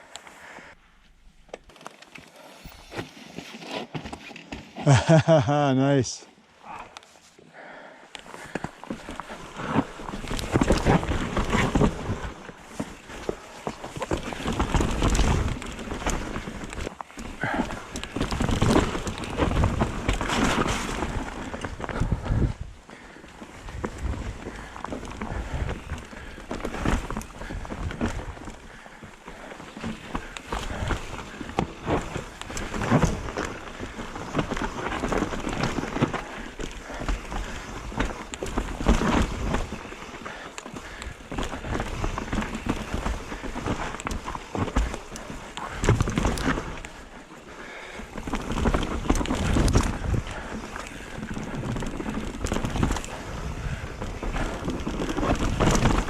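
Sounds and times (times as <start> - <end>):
bike rattling: 8.2 - 56.0
tyres crunching over dirt: 8.2 - 56.0
wind rumbling on microphone: 17.4 - 47.1, 48.0 - 56.0.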